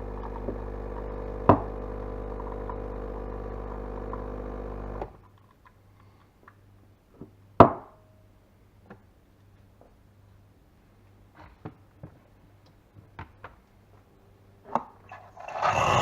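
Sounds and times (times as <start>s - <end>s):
espresso machine pump humming: 0.0s - 5.0s, 15.1s - 16.0s.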